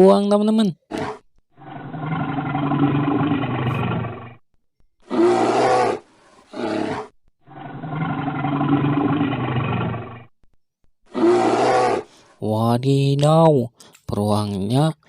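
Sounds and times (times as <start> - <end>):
bear growling roar: 0.9 - 4.4, 5.0 - 10.3, 11.1 - 12.2.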